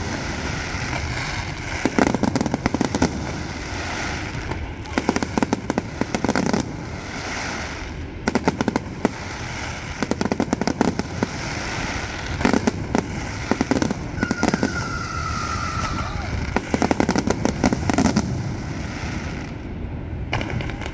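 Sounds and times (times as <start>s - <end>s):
fireworks crackling bangs: 0.0s - 20.9s
steady high whistle: 14.1s - 16.5s.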